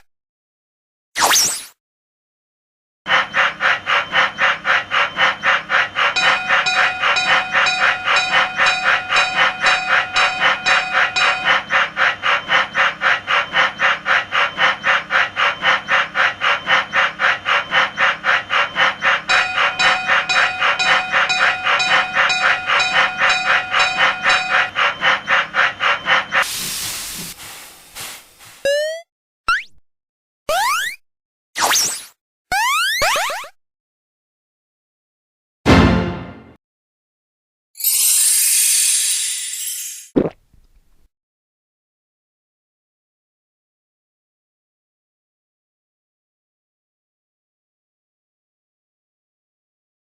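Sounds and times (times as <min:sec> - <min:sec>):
cartoon steam train chugging: 0:03.1 - 0:28.9
steam hiss: 0:26.4 - 0:28.7.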